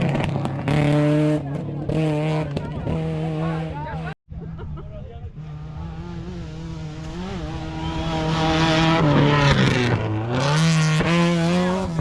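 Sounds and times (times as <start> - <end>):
rally car engine accelerating past: 5.3 - 12.0.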